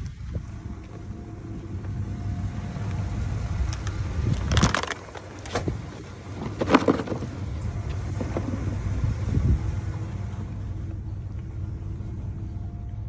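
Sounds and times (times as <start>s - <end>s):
steady low rumble: 0.0s - 13.0s
clattering rattling noises: 3.6s - 9.5s.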